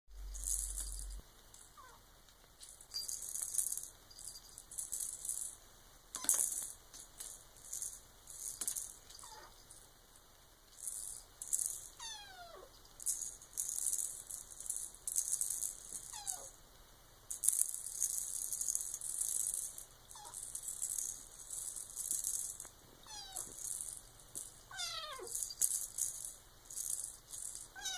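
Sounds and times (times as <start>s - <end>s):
rattling cat toy shaken: 0.2s - 1.8s, 2.6s - 9.8s, 10.7s - 12.2s, 12.9s - 16.5s, 17.3s - 27.9s
kitten meowing: 23.1s - 23.5s, 24.7s - 25.3s.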